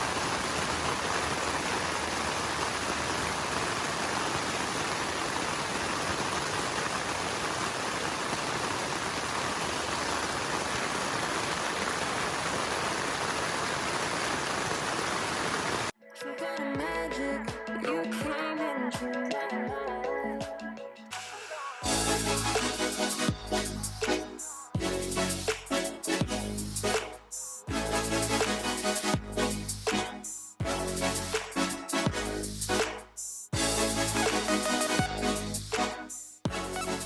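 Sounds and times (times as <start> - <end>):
loud rushing water: 0.0 - 15.9
music: 16.0 - 37.0.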